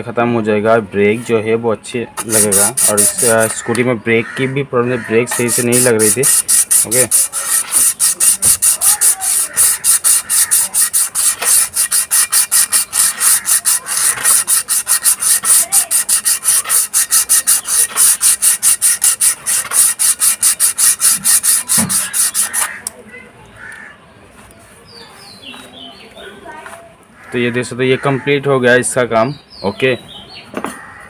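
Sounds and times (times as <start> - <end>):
sandpaper rubbing on metal: 2.2 - 3.7, 5.3 - 22.9.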